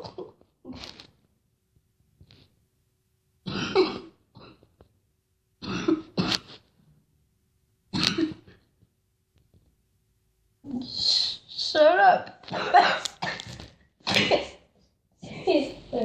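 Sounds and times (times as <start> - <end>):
girl coughing: 3.5 - 4.6, 5.6 - 6.6, 8.0 - 8.6, 12.5 - 14.6.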